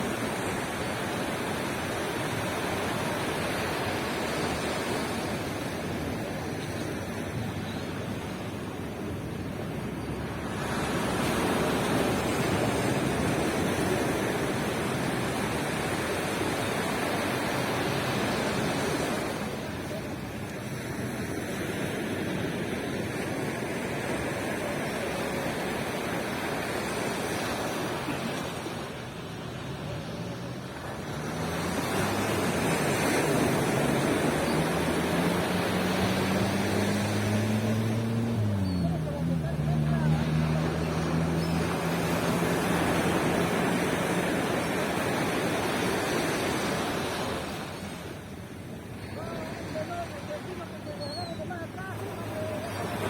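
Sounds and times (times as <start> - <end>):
boat engine humming: 0.0 - 53.0
surf breaking on a beach: 0.0 - 53.0.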